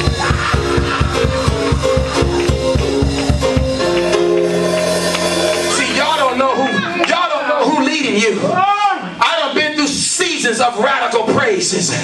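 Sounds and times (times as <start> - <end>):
drum and bass beat: 0.0 - 7.2
held chord: 0.0 - 7.4
band playing fast groove: 0.0 - 8.6.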